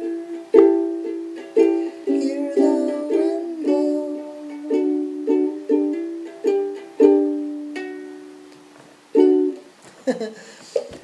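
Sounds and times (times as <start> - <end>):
ukulele strumming chords: 0.0 - 9.8.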